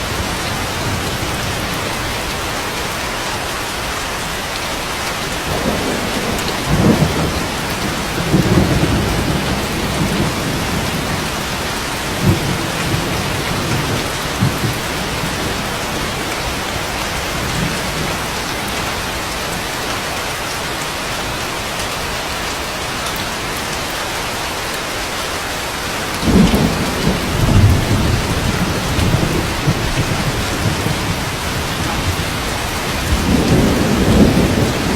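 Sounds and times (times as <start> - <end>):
steady rain: 0.0 - 34.9
rolling thunder: 5.5 - 18.8, 26.2 - 34.9.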